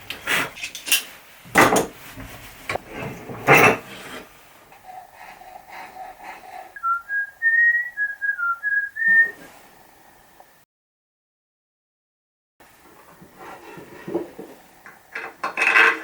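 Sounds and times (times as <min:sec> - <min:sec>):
person whistling a tune: 0:06.8 - 0:09.4.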